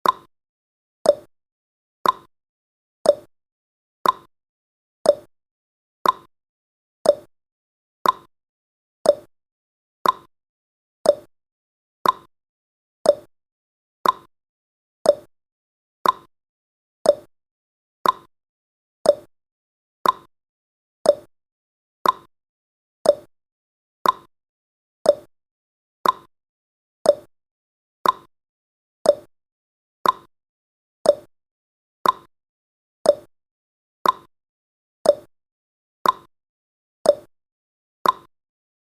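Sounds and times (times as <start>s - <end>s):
clock ticking: 2.0s - 2.3s, 4.0s - 4.3s, 6.0s - 6.3s, 8.0s - 8.3s, 10.0s - 10.3s, 12.0s - 12.3s, 14.0s - 14.3s, 15.1s - 15.3s, 16.0s - 16.3s, 18.0s - 18.3s, 20.0s - 20.3s, 21.1s - 21.3s, 22.0s - 22.3s, 24.0s - 24.3s, 26.0s - 26.3s, 28.0s - 28.3s, 29.1s - 29.3s, 30.0s - 30.3s, 31.1s - 31.3s, 32.0s - 32.3s, 33.1s - 33.3s, 34.0s - 34.3s, 35.1s - 35.3s, 36.0s - 36.3s, 38.0s - 38.3s.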